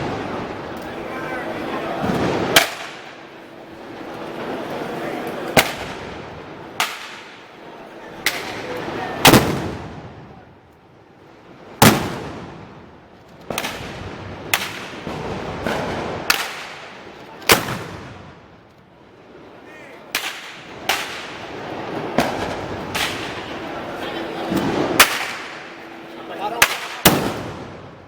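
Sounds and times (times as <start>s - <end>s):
crowd murmuring: 0.0s - 10.8s, 19.1s - 28.0s
gunpowder bangs echoing: 20.1s - 21.6s, 24.5s - 25.9s, 26.6s - 27.7s.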